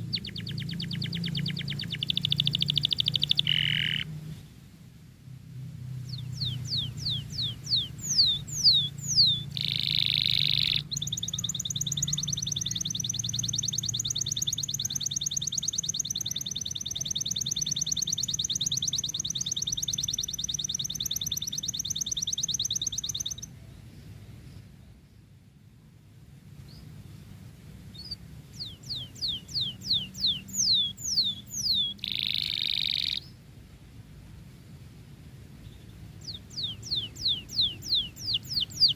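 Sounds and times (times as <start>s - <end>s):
canary singing: 0.0s - 4.2s, 5.9s - 23.5s, 27.9s - 33.4s, 35.6s - 38.9s.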